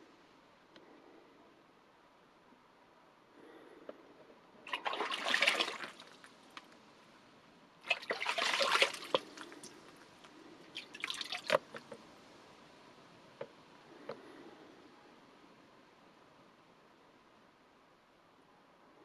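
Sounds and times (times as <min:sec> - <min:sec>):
water splashed by hand: 0:04.7 - 0:06.2, 0:07.8 - 0:09.8
water dripping: 0:07.8 - 0:11.9.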